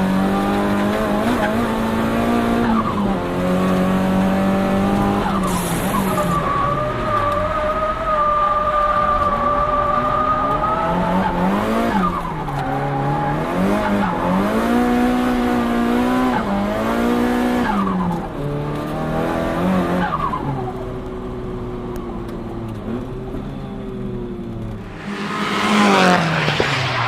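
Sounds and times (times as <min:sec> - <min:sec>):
turbocharged car engine revving: 0:24.6 - 0:27.0.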